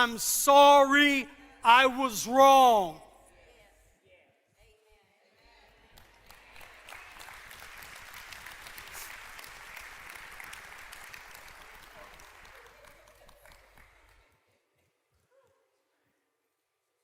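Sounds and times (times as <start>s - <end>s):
congregation applauding: 0.0s - 3.0s, 6.0s - 14.2s.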